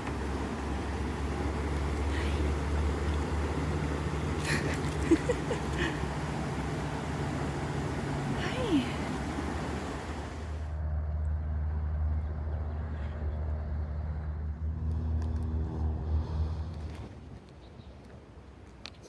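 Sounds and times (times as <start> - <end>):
vehicle engine humming: 0.0 - 10.8.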